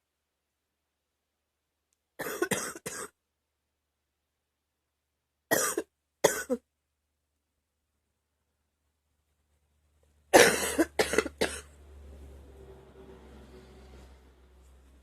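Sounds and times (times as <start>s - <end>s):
girl coughing: 2.2s - 3.2s, 5.5s - 6.6s, 10.3s - 11.7s.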